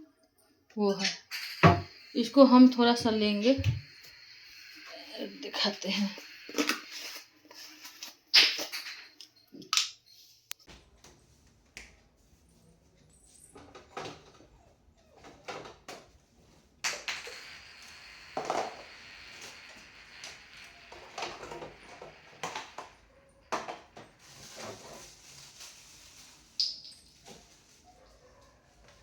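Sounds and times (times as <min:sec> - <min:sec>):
steady hiss: 0:01.1 - 0:09.0, 0:16.9 - 0:23.0.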